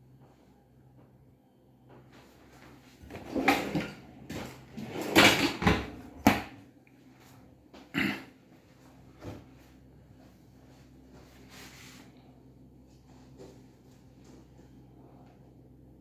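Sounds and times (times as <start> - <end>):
cabinet doors and drawers sliding: 3.0 - 6.5.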